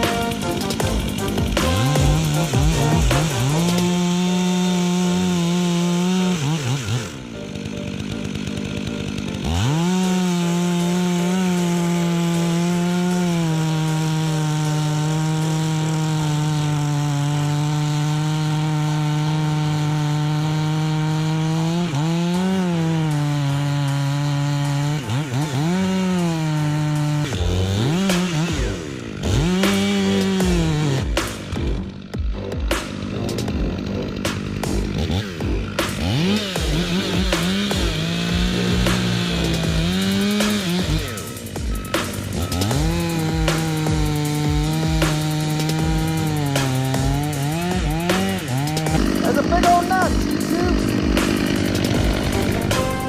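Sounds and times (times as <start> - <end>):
chainsaw cutting wood: 0.0 - 53.0.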